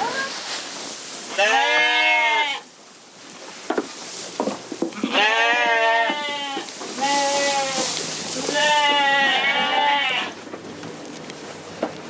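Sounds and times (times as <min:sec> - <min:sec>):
sheep bleating: 0:01.4 - 0:02.7, 0:05.0 - 0:10.4.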